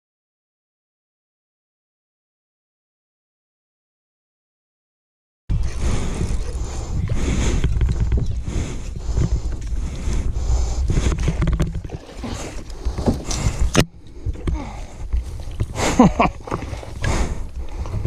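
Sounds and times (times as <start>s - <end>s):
low water rumble: 5.5s - 18.0s.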